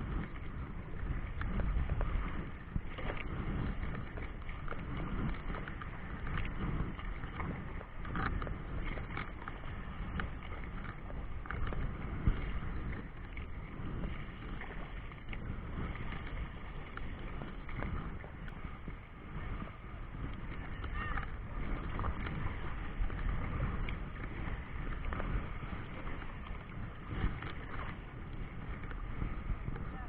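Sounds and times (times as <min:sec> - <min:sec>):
choppy water splashing: 0:00.0 - 0:30.0
wind on microphone: 0:00.0 - 0:30.0.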